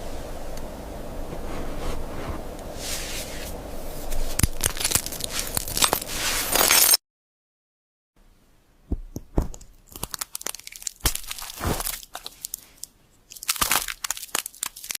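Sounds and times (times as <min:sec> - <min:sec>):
crunching and cracking: 0:04.0 - 0:07.0, 0:09.3 - 0:15.0.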